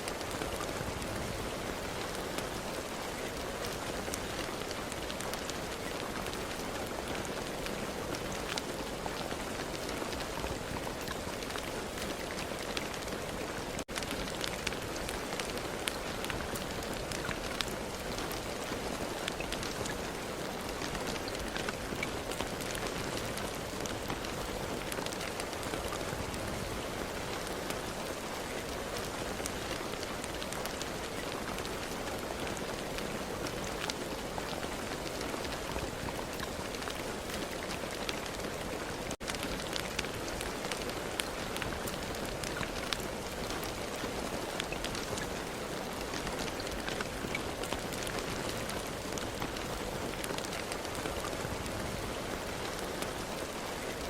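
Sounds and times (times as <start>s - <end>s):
raindrops ticking on surface: 0.0s - 54.0s
steady rain falling: 0.0s - 54.0s.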